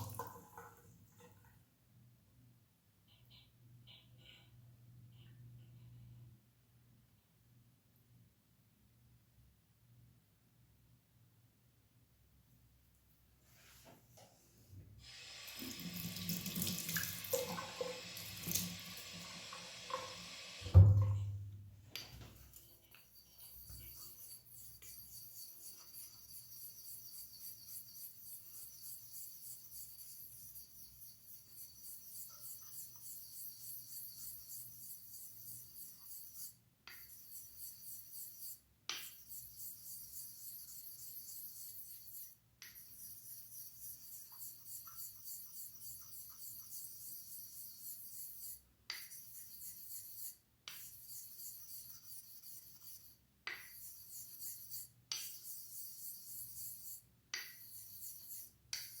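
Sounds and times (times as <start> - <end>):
razor scraping on whetstone: 22.7 - 59.0.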